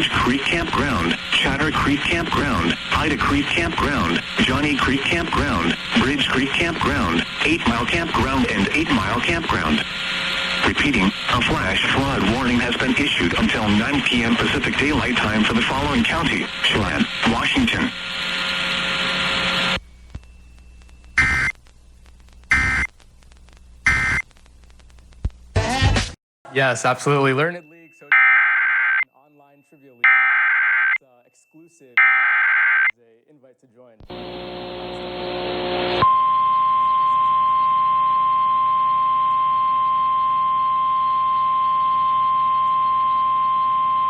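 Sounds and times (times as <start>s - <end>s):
radio static: 0.0s - 25.7s, 34.0s - 36.0s
steady warning alarm tone: 21.2s - 21.5s, 27.7s - 29.3s, 30.0s - 32.9s, 34.1s - 44.0s
two-tone digital data screech: 21.2s - 21.5s, 22.5s - 22.9s, 23.9s - 24.2s, 30.0s - 31.2s, 32.0s - 32.9s.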